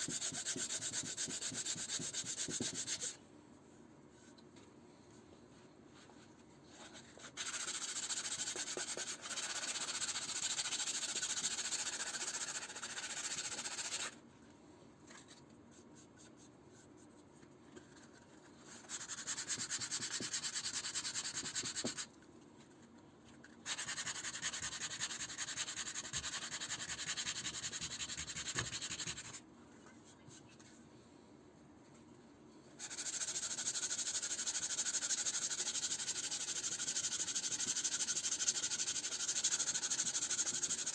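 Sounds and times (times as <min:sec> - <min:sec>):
sandpaper rasping on wood: 0:00.0 - 0:03.2, 0:07.4 - 0:14.2, 0:32.8 - 0:40.9.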